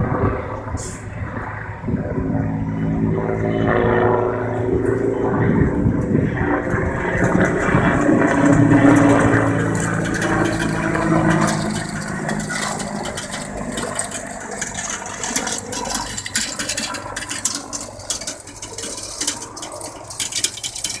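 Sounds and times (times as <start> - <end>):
helicopter rotor drone: 0.0 - 21.0
faint crackles: 6.6 - 21.0.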